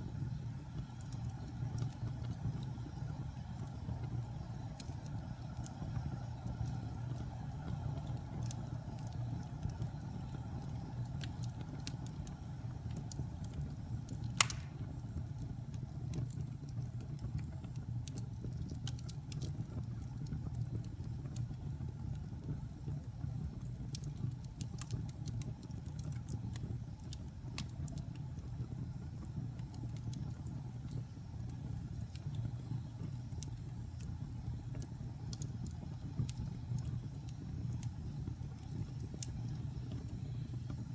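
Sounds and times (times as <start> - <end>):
fire rumbling and crackling: 0.0 - 40.9
sharp loud pop: 14.4 - 14.8.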